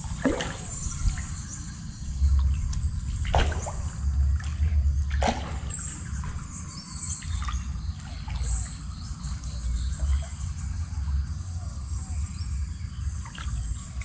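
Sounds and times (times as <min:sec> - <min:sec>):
pulsing low rumble: 0:00.0 - 0:14.0
stream water trickling: 0:00.0 - 0:14.0
sharp splashes: 0:00.1 - 0:01.2, 0:03.2 - 0:06.3.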